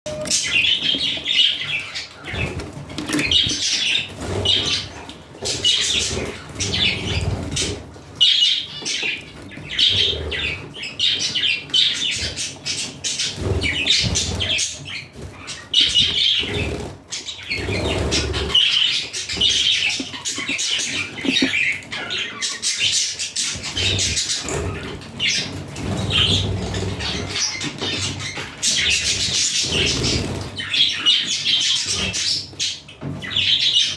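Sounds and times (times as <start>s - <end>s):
budgerigars chirping: 0.1s - 33.9s.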